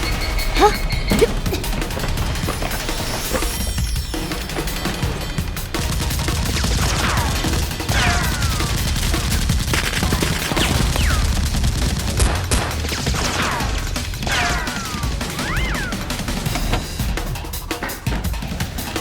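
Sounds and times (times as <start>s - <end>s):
falling whistles: 0.0s - 7.3s, 13.4s - 18.2s
rapid gunfire: 0.0s - 19.0s.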